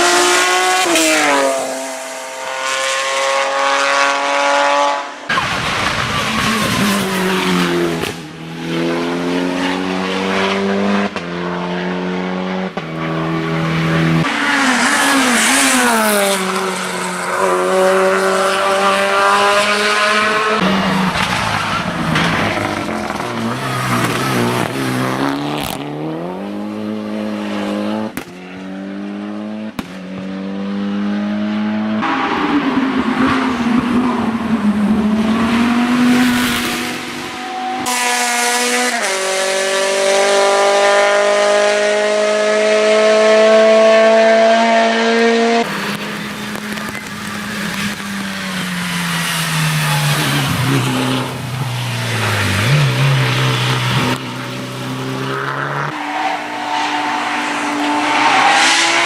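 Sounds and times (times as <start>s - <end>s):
race car engine shifting gears: 12.4s - 27.0s, 31.3s - 59.0s.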